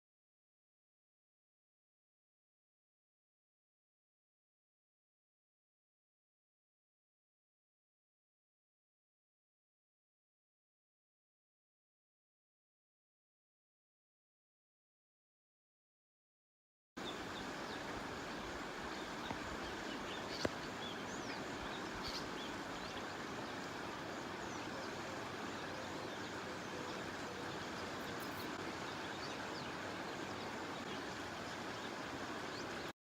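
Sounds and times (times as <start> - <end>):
outdoor background noise: 17.0 - 33.0
faint bird chirps: 18.9 - 23.6, 24.2 - 32.9.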